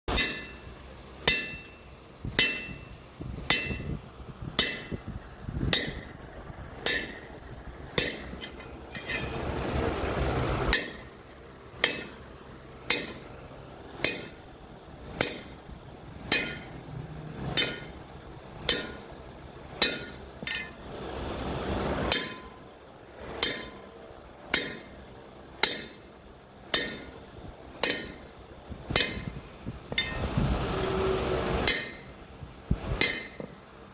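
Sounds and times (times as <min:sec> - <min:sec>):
hammer striking metal: 0:00.1 - 0:04.0, 0:04.6 - 0:05.1, 0:05.7 - 0:06.1, 0:06.8 - 0:07.3, 0:08.0 - 0:09.4, 0:10.7 - 0:11.1, 0:11.8 - 0:12.2, 0:12.9 - 0:13.3, 0:14.0 - 0:14.4, 0:15.2 - 0:15.6, 0:16.3 - 0:16.8, 0:17.4 - 0:18.0, 0:18.6 - 0:19.2, 0:19.8 - 0:20.8, 0:22.1 - 0:22.6, 0:23.4 - 0:23.9, 0:24.5 - 0:25.0, 0:25.6 - 0:26.1, 0:26.7 - 0:27.2, 0:27.8 - 0:28.2, 0:28.9 - 0:29.3, 0:29.9 - 0:30.3, 0:31.6 - 0:32.1, 0:33.0 - 0:33.5.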